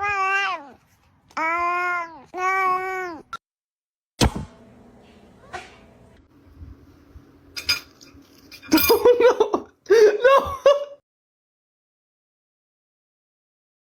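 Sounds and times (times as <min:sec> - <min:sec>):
high-pitched laugh: 0:08.7 - 0:11.0.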